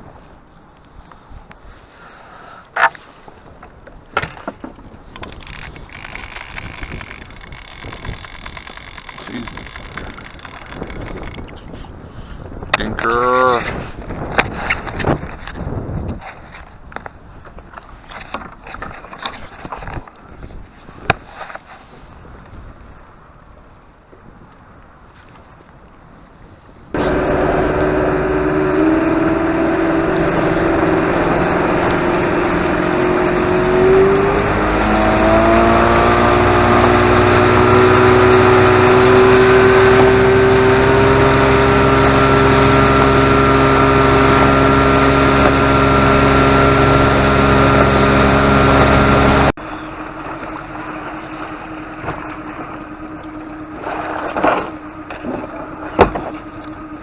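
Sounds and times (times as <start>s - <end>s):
boat motor running: 4.2s - 11.6s, 27.0s - 57.0s.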